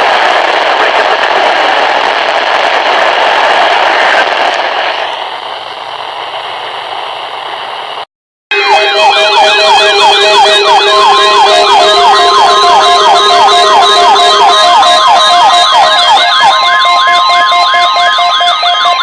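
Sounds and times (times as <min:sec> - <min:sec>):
steady warning alarm tone: 0:08.5 - 0:19.0
weather radio siren alarms: 0:08.5 - 0:19.0.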